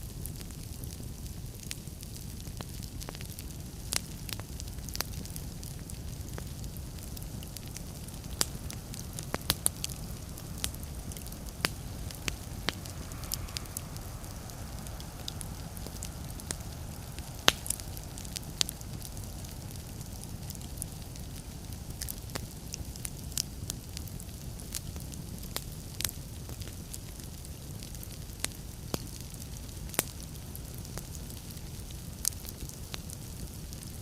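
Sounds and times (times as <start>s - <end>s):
log fire crackling: 0.0s - 34.0s.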